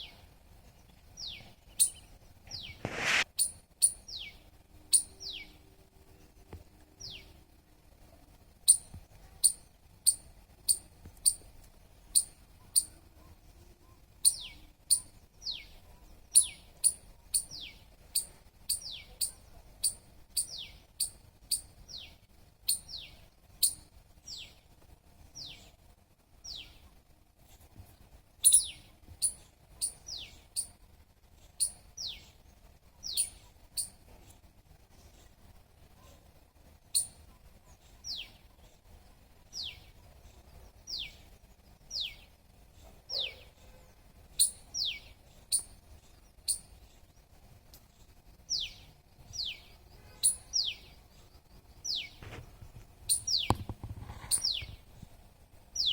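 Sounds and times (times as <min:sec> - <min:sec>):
squirrel chirping: 0:01.2 - 0:02.8, 0:03.4 - 0:05.4, 0:08.6 - 0:11.5, 0:12.1 - 0:13.0, 0:14.2 - 0:24.4, 0:28.4 - 0:30.7, 0:31.6 - 0:32.3, 0:33.0 - 0:34.0, 0:36.9 - 0:37.2, 0:44.3 - 0:45.8, 0:46.4 - 0:46.7, 0:48.5 - 0:51.0, 0:51.8 - 0:52.2, 0:53.1 - 0:54.8.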